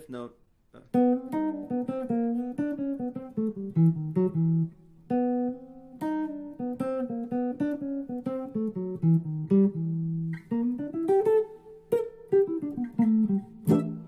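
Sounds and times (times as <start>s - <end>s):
fast plucked jazz guitar: 0.9s - 14.0s.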